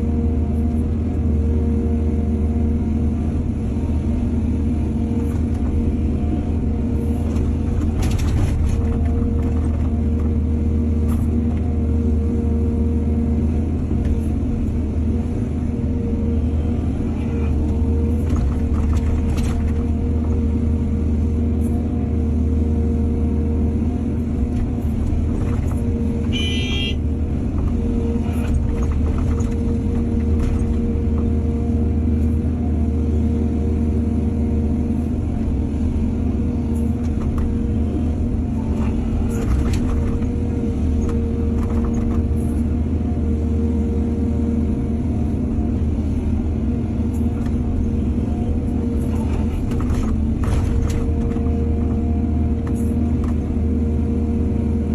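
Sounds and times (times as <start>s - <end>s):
excavator diesel engine running: 0.0s - 54.9s.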